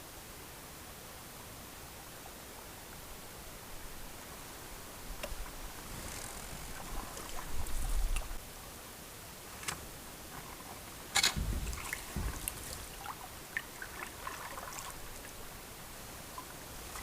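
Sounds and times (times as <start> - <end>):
water trickling: 2.2 - 8.4, 10.3 - 17.0
paddle strokes swishing: 5.1 - 8.4, 11.4 - 17.0
paddle knocking on hull: 11.2 - 15.4.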